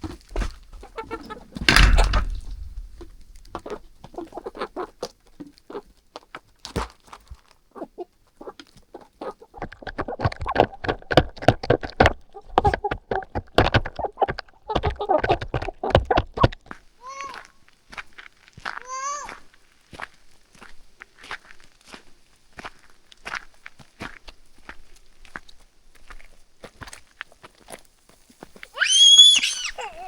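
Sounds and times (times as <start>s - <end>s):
chickens clucking: 0.4s - 2.0s
loud knock: 1.7s - 4.0s.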